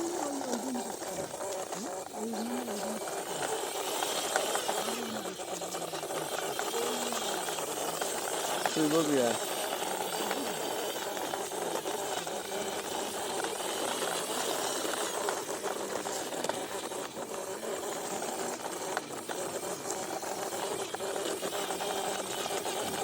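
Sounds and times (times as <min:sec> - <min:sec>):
small electric motor rattling: 0:00.0 - 0:23.0.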